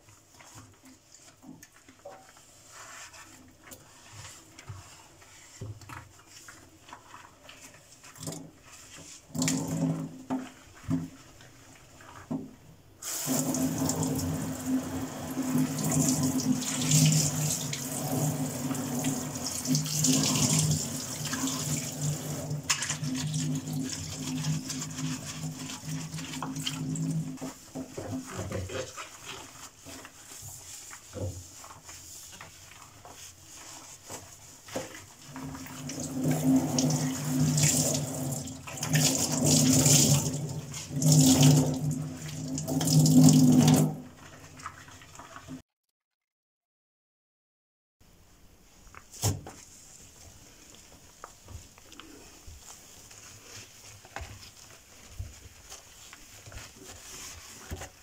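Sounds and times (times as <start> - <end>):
tap water running into sink: 13.0 - 28.6, 35.4 - 45.5.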